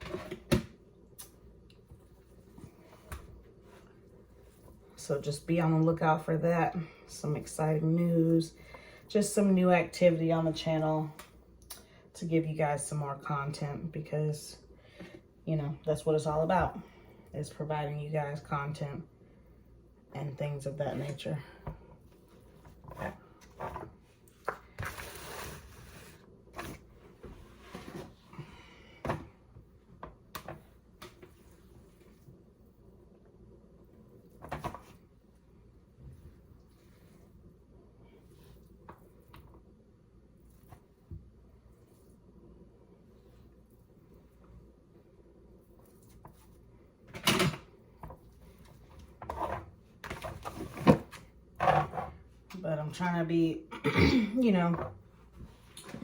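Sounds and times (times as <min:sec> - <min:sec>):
kitchen knocks and clatters: 0:47.1 - 0:48.2.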